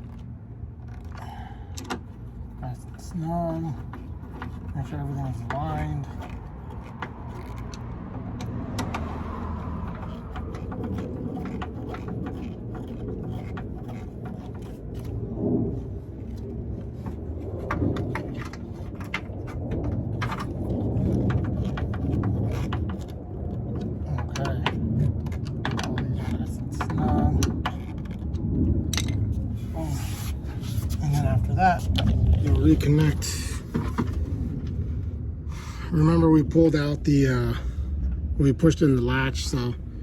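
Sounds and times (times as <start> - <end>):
steady low rumble: 0.0 - 40.0
hand tools clicking and knocking: 3.0 - 15.2.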